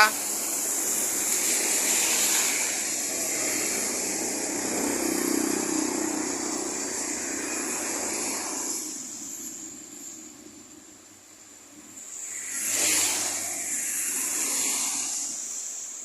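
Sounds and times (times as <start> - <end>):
tyre hiss on wet road: 0.0 - 16.0.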